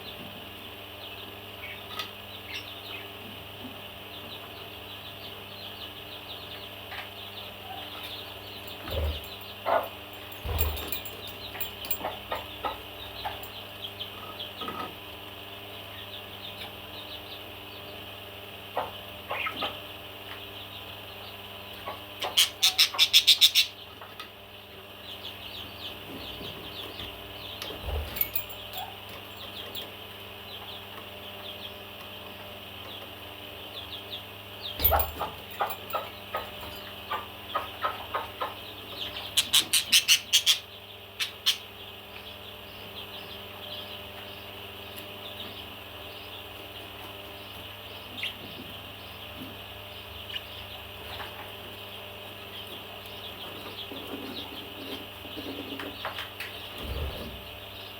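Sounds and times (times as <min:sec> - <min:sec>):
parrots chattering: 0:21.9 - 0:23.8, 0:34.8 - 0:41.8.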